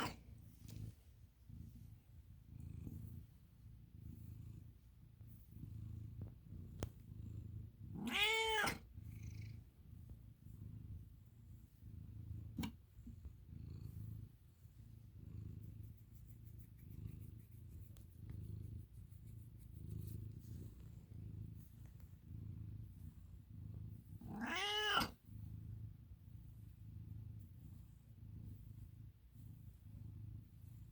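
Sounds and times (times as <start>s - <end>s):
cat purring: 0.0s - 30.9s
cat meowing: 8.0s - 8.8s, 24.3s - 25.2s.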